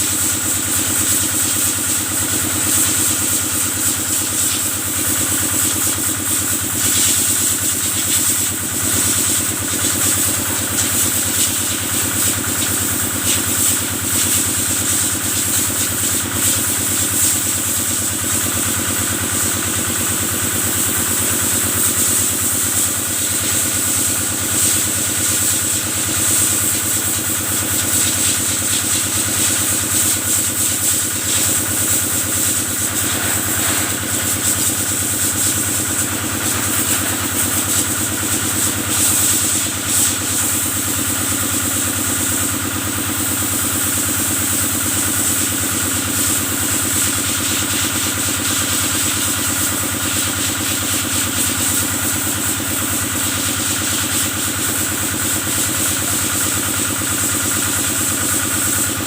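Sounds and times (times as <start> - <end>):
diesel engine running steadily: 0.0 - 59.0.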